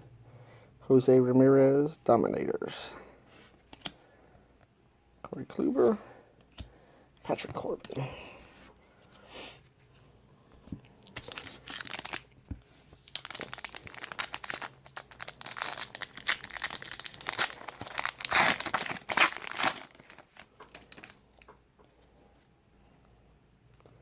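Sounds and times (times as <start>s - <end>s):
plastic wrapper tearing and crinkling: 11.0s - 12.4s, 13.0s - 21.6s.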